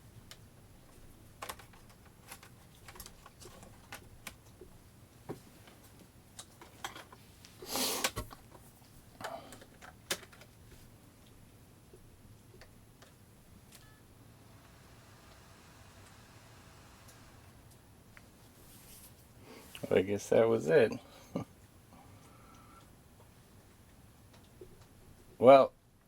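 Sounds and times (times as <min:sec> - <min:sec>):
rustling scrape: 0:18.3 - 0:19.3.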